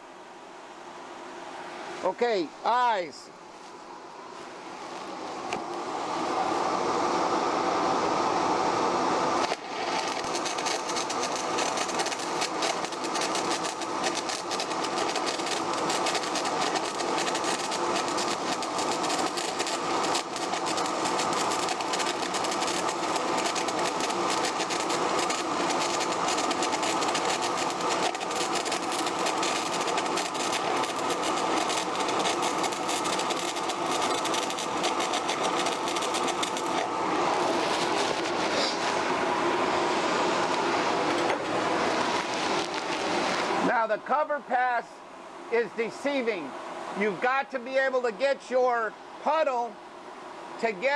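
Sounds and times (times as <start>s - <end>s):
welding arc crackling and sizzling: 4.4s - 44.9s.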